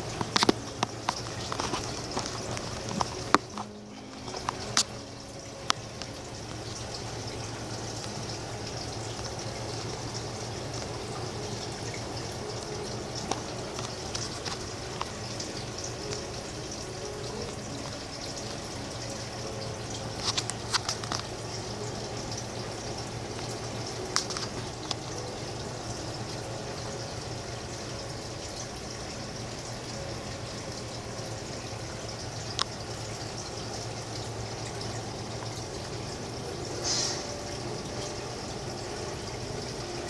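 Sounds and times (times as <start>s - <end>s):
running water rushing: 0.0s - 40.0s.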